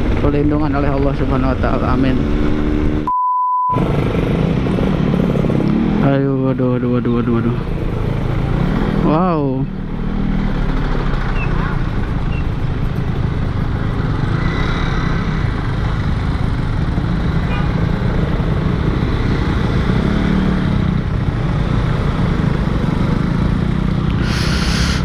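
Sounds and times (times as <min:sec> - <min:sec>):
short hiss: 0:24.2 - 0:25.0.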